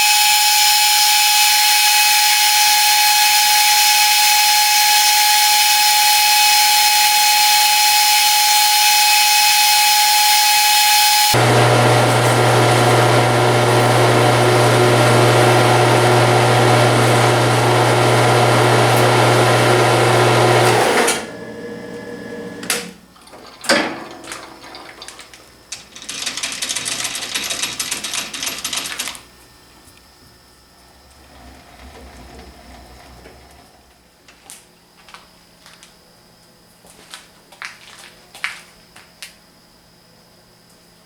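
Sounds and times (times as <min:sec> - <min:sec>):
shop machine motor humming: 0:00.0 - 0:25.8
fast rattling: 0:24.4 - 0:29.2.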